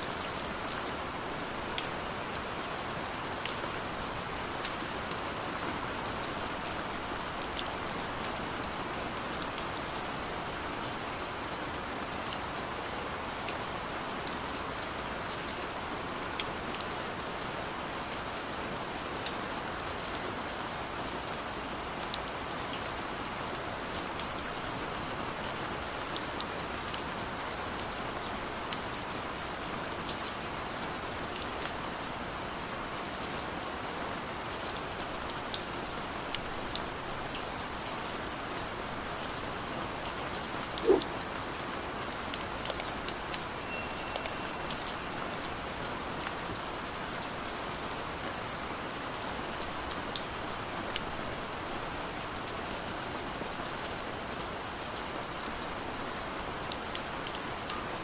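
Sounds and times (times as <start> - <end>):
gentle rain falling: 0.0 - 58.0
individual raindrop ticks: 42.6 - 43.0.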